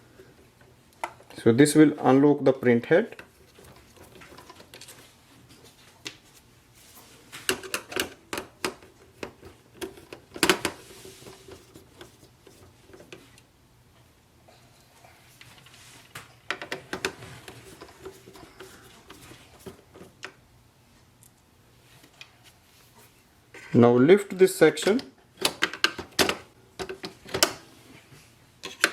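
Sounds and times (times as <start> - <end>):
quiet handling of plastic parts: 2.8 - 23.8.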